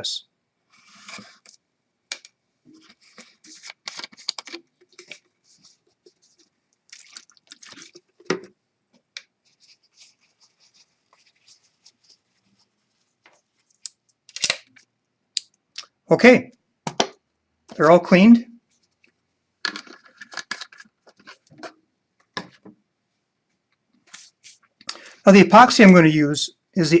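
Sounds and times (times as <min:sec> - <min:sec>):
rustling and rubbing: 0:00.7 - 0:01.6, 0:02.6 - 0:13.8, 0:18.6 - 0:21.8, 0:24.0 - 0:24.8.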